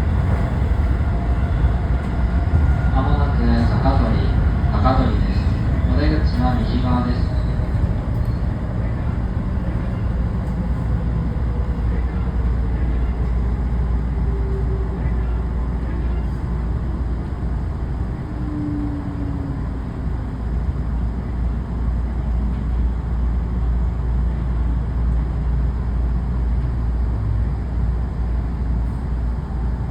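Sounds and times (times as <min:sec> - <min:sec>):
train wheels rumbling on track: 0:00.0 - 0:29.9.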